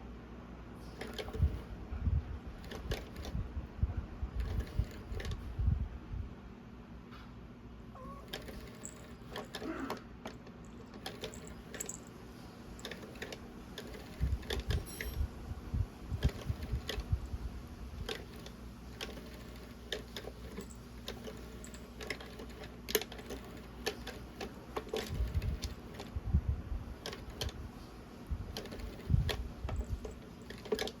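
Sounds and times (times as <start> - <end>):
cat toy clicking and rattling: 1.0 - 1.7, 2.6 - 3.4, 4.4 - 5.4, 8.0 - 12.2, 12.8 - 15.3, 16.1 - 26.2, 27.0 - 27.6, 28.5 - 31.0.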